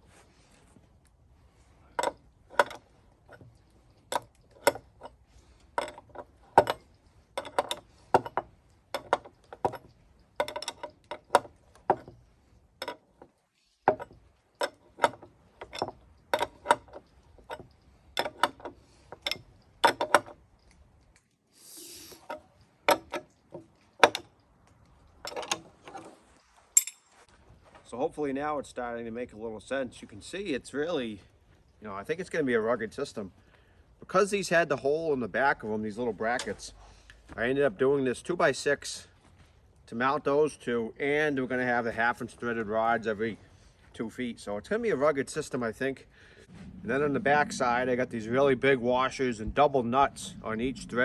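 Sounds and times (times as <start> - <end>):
hardware parts clicking and clanking: 1.6 - 21.3, 22.2 - 27.3
short hiss: 21.5 - 22.3.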